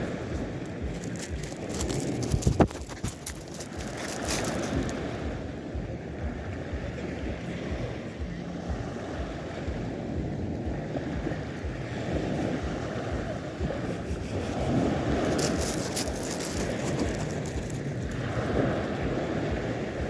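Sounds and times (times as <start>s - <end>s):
crackling hiss: 0.0s - 6.4s, 12.4s - 19.2s
wind buffeting microphone: 0.0s - 20.0s.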